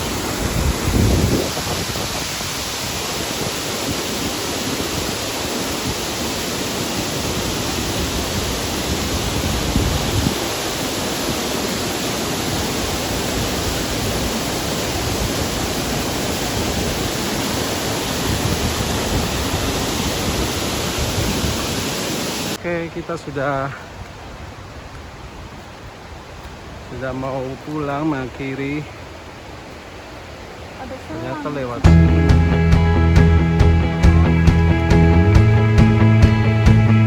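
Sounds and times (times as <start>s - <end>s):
waterfall rushing: 0.0s - 37.0s.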